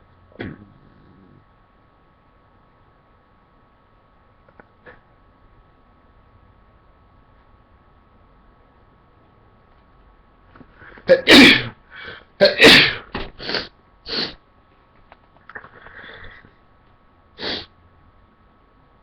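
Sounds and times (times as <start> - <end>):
man sneezing: 11.1 - 11.8, 12.4 - 14.4
short bursts of breath: 17.4 - 17.7.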